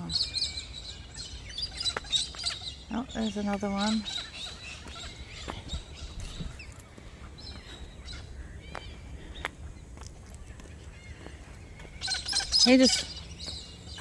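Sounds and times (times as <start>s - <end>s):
birds chirping and whistling: 0.0s - 14.0s
sharp bird calls: 0.0s - 14.0s.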